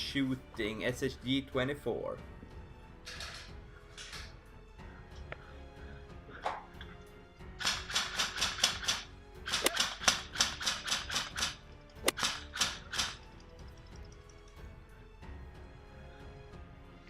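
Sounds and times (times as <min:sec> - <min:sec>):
airsoft gun rapid shots: 0:07.6 - 0:13.2.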